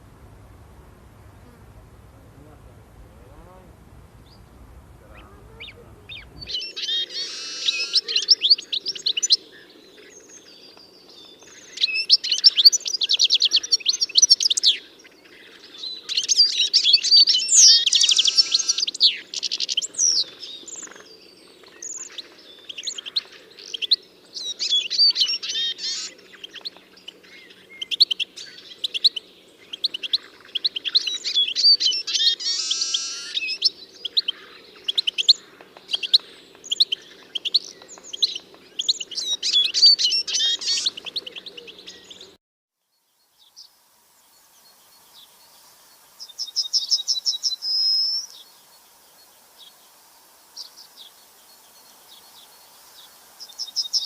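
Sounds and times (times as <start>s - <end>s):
faint steady hum: 0.0s - 13.0s
songbird singing: 0.0s - 54.0s.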